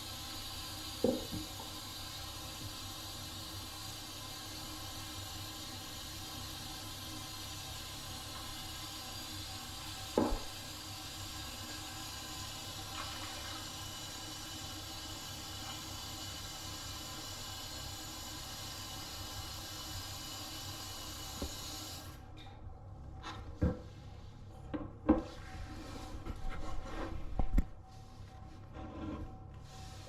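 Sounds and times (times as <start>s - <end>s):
running water hissing: 0.0s - 22.2s.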